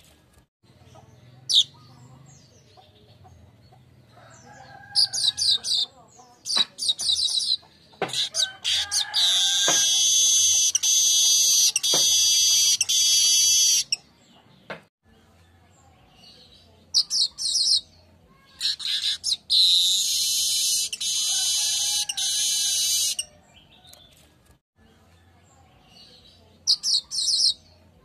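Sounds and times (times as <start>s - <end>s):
bird chattering notes: 5.0s - 14.0s, 18.5s - 23.3s.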